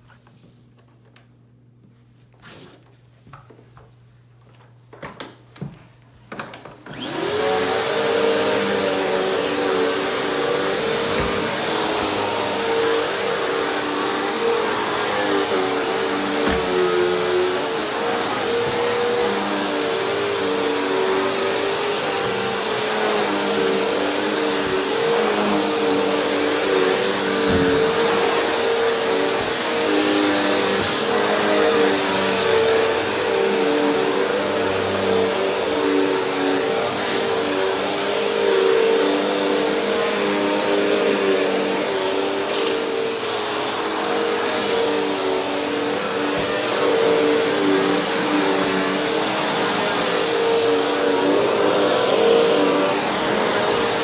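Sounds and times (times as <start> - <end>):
vacuum cleaner running: 5.6 - 54.0.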